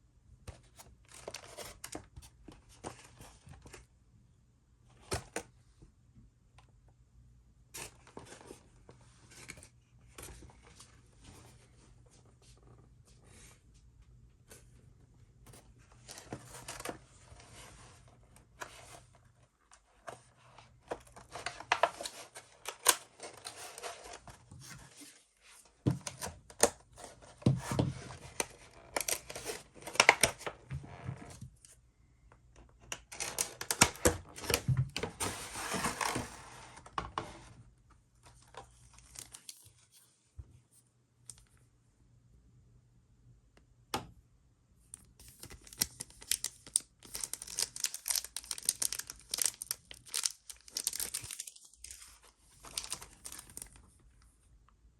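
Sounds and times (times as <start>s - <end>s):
wrappers torn open and crinkled: 45.3s - 53.8s.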